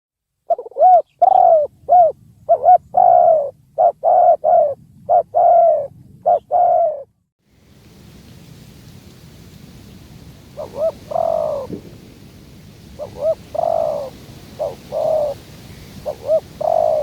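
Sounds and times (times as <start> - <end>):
dove cooing: 0.5 - 7.1, 10.6 - 12.0, 12.9 - 17.0.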